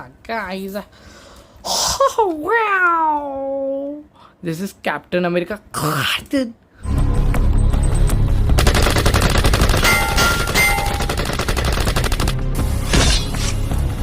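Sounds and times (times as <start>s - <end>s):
music: 6.8s - 14.0s
rapid machine gun fire: 8.5s - 12.5s.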